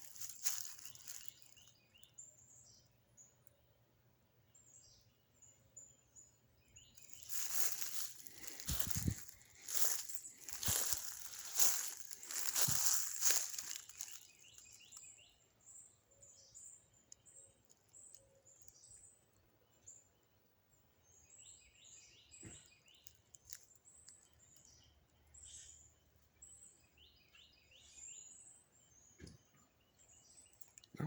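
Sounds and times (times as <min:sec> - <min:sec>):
brush rustling underfoot: 0:00.0 - 0:01.6, 0:07.0 - 0:15.0
songbirds chirping and trilling: 0:00.0 - 0:31.0.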